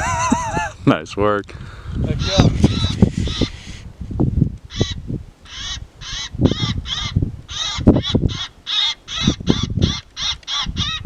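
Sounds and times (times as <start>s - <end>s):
harsh crow-like caws: 4.7s - 11.0s.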